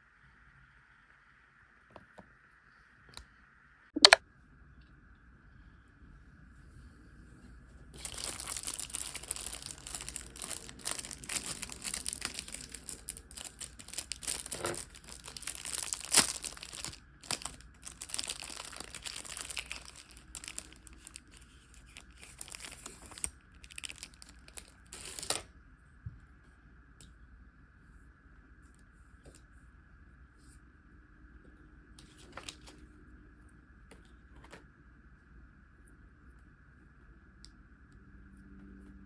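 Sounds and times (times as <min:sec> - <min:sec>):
packaging crinkling and tearing: 0:08.0 - 0:25.5, 0:32.0 - 0:32.8.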